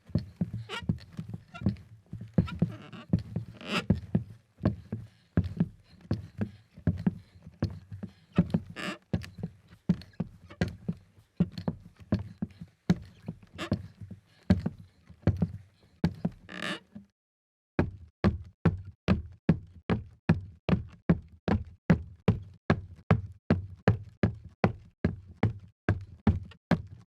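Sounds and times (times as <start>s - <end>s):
boots on wooden floor: 0.1s - 16.7s
floorboard creaking: 0.4s - 4.2s.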